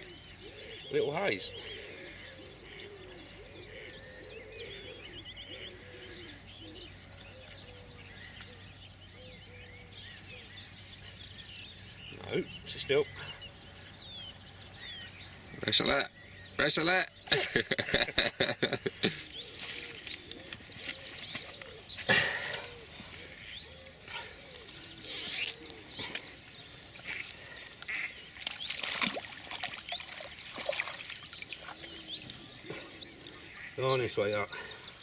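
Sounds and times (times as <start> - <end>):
waterfowl honking and quacking: 27.0 - 34.8.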